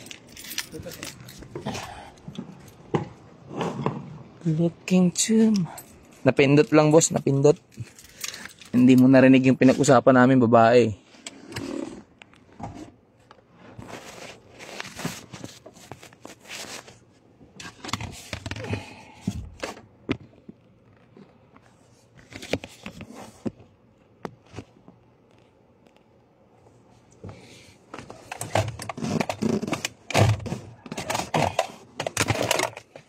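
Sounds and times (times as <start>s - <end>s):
small tools clicking and scraping: 5.5s - 9.1s.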